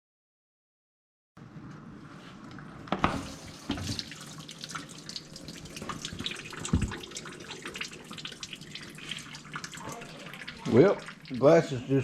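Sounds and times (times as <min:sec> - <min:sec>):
dishwasher water splashing: 0:03.0 - 0:12.0.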